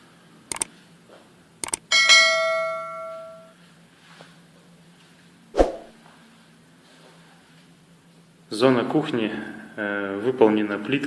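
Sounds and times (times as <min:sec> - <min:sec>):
bright metallic ring: 0:01.9 - 0:03.6.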